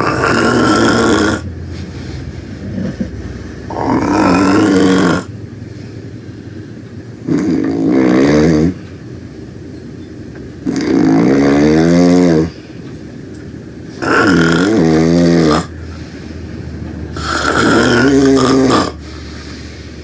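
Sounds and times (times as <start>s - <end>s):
loud fluttering snores: 0.0s - 1.5s, 2.6s - 5.3s, 7.2s - 8.8s, 10.6s - 12.6s, 13.9s - 15.8s, 17.1s - 19.4s
quiet breathing: 15.7s - 17.3s, 18.9s - 20.0s.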